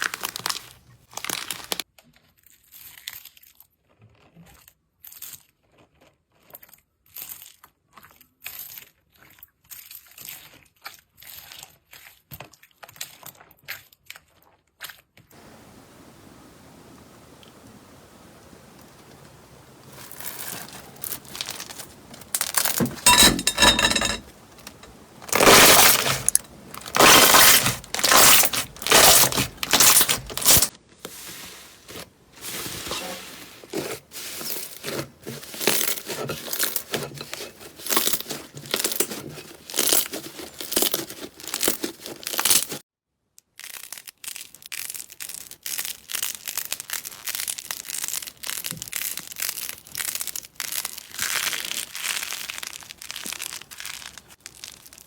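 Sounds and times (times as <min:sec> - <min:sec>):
slime crackling squishes: 0:00.0 - 0:01.8, 0:19.8 - 0:22.8, 0:25.1 - 0:30.7, 0:43.5 - 0:55.0.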